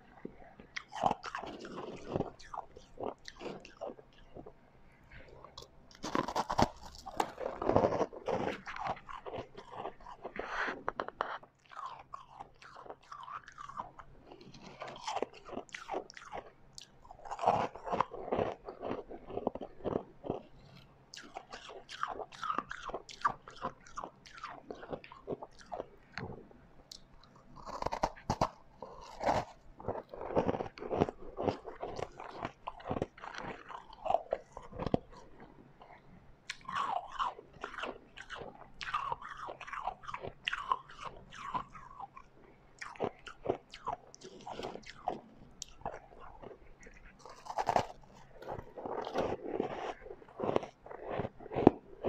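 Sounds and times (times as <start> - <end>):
person crunching ice: 0.8 - 4.0, 5.5 - 16.5, 17.2 - 20.5, 27.6 - 35.3, 36.5 - 42.0, 42.8 - 51.9.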